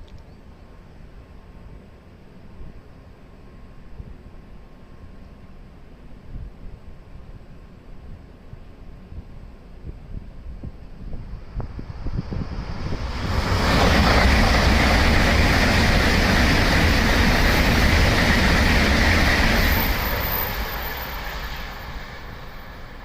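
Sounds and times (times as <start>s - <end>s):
high-speed train rushing past: 8.3s - 23.0s.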